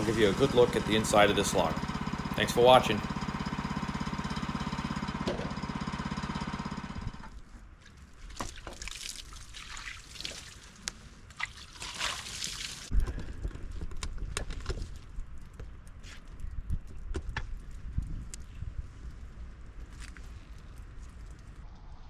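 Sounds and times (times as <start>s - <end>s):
small gasoline engine running: 0.0s - 7.4s.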